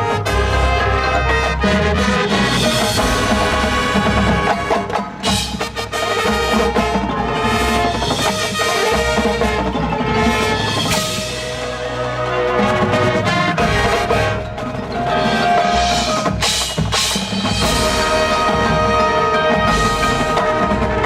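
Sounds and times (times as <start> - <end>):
marching band playing: 0.0 - 21.0.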